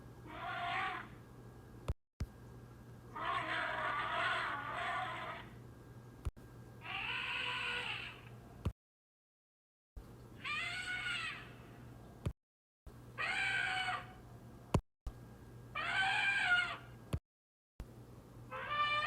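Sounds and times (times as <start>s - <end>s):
animal call rising and falling: 0.3s - 1.2s, 3.1s - 5.6s, 6.8s - 8.3s, 10.4s - 11.6s, 13.2s - 14.2s, 15.8s - 16.9s, 18.5s - 19.0s
faint low hum: 17.8s - 19.0s.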